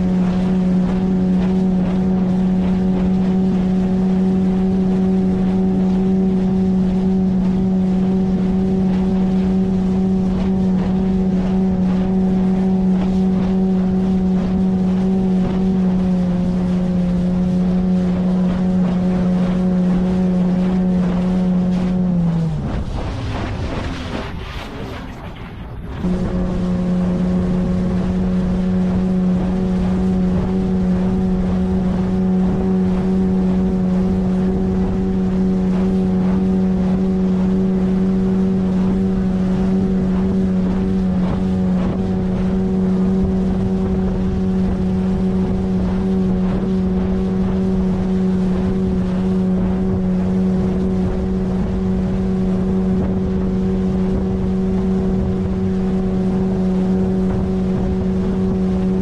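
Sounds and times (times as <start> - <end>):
outboard motor running: 0.0 - 59.0
water noise: 0.0 - 59.0
wind noise: 0.0 - 59.0.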